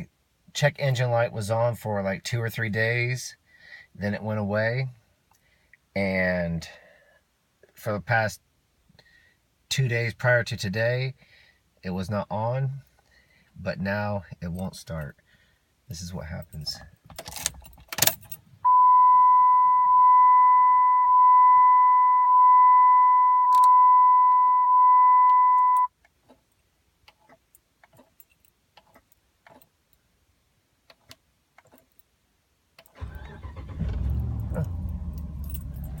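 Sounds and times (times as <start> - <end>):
dashboard warning chime: 18.7 - 25.9
low mechanical rumble: 33.0 - 36.0.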